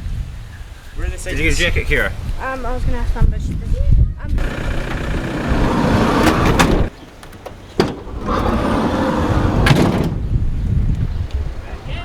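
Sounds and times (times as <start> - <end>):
road and engine rumble: 4.4 - 10.9.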